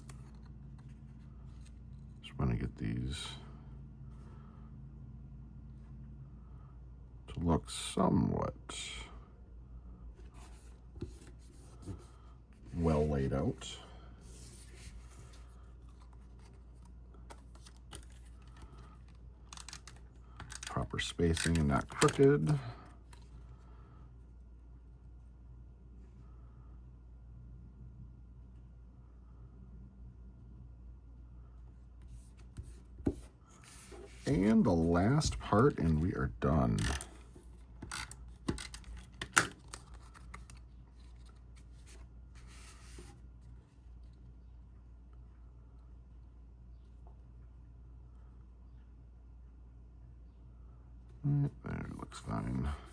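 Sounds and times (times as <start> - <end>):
low steady hum: 0.0 - 52.9
cardstock rustling: 10.3 - 22.7.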